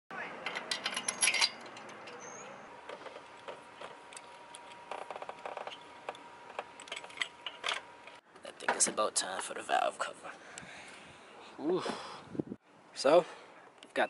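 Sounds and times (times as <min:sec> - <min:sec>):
metal tools clicking: 0:00.4 - 0:02.4.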